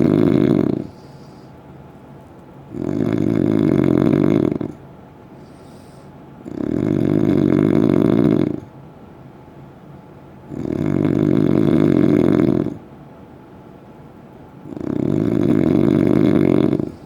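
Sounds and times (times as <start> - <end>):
loud rattling snores: 0.0 - 1.4, 2.7 - 4.8, 6.4 - 8.7, 10.5 - 12.8, 14.7 - 17.0.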